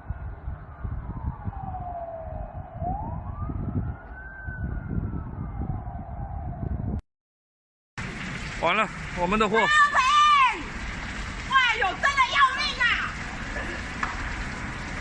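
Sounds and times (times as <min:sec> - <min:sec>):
emergency siren wailing: 0:00.0 - 0:07.0.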